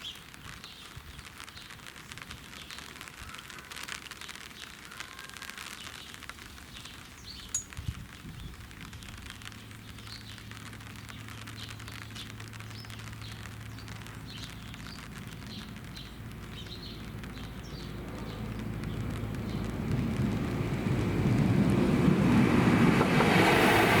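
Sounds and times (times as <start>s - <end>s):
birds chirping: 0.0s - 19.8s
light crackling: 0.0s - 24.0s
train rumbling: 17.7s - 24.0s.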